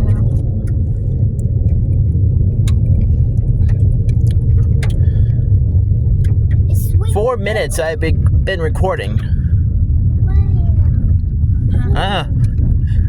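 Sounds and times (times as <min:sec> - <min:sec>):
light clicks and rattles: 0:00.0 - 0:06.7
car driving low rumble: 0:00.0 - 0:13.0.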